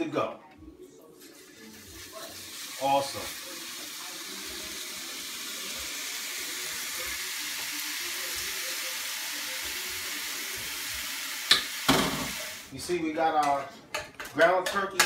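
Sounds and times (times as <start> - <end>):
meat sizzling in a skillet: 1.2 - 12.8.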